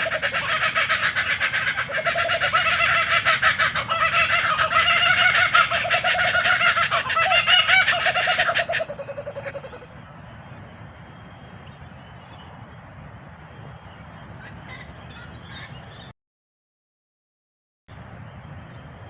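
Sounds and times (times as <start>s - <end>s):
kookaburra chuckling call: 0.0s - 9.9s.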